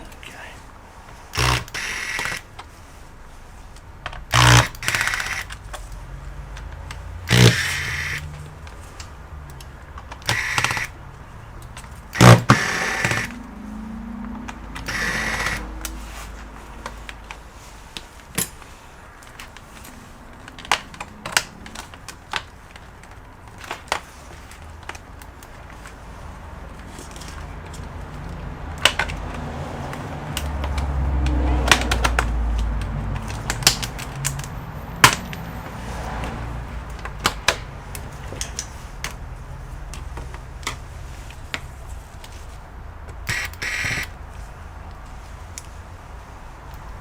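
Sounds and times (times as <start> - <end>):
clicks of small parts and screws: 1.4 - 2.7, 4.1 - 11.0, 43.1 - 44.2.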